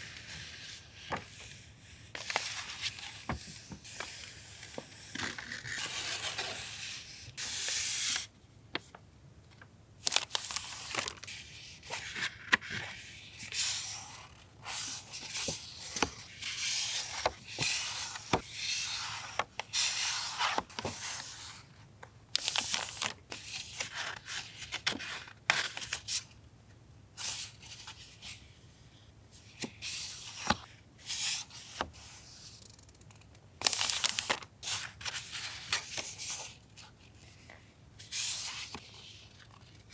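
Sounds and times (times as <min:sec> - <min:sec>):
packaging crinkling and rustling: 0:10.0 - 0:11.3, 0:33.6 - 0:35.2.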